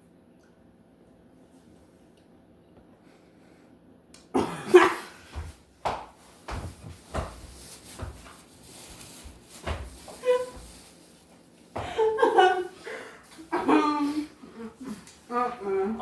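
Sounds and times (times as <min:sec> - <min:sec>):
person coughing: 0:04.3 - 0:05.2.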